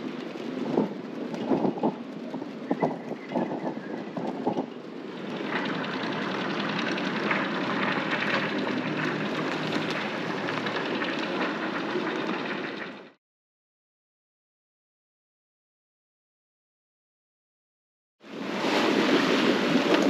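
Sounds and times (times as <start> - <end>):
strong wind rushing: 0.0 - 6.2.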